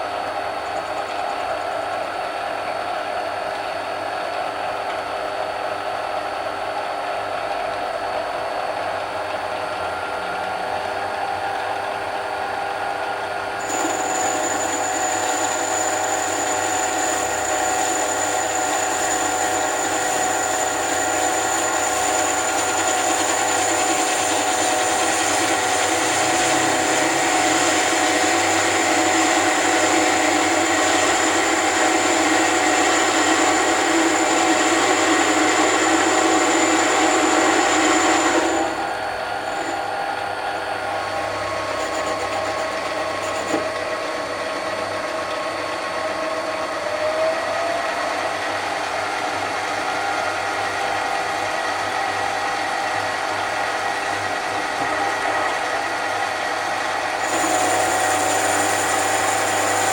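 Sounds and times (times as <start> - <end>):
high-pitched whine: 13.6 - 40.0
lathe motor whining: 13.6 - 59.9.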